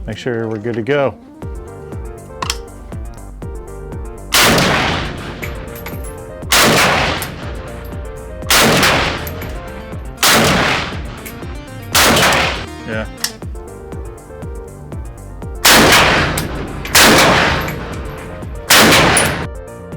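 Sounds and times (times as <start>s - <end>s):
pistol shots echoing: 2.4s - 2.9s, 4.2s - 19.5s.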